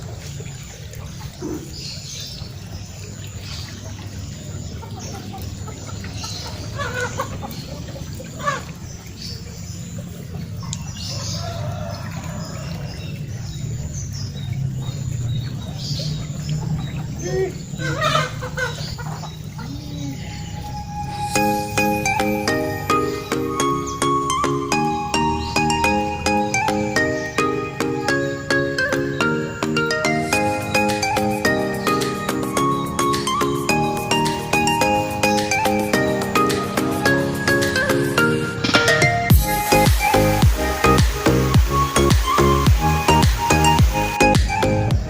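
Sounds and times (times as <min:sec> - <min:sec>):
chickens clucking: 0:04.5 - 0:09.4, 0:16.0 - 0:20.4.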